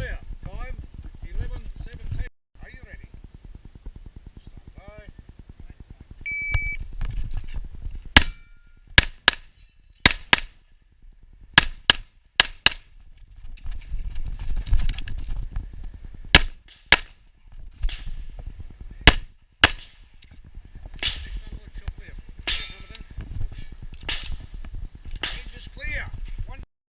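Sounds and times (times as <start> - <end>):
shot timer beep: 6.3 - 6.8
pistol shots: 9.0 - 10.5, 16.3 - 17.2, 19.0 - 20.0.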